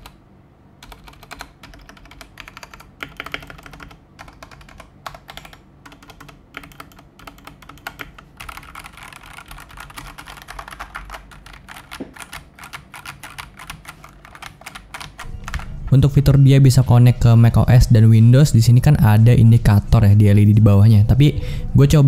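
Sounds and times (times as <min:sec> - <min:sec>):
mechanical keyboard typing: 0:00.8 - 0:15.7.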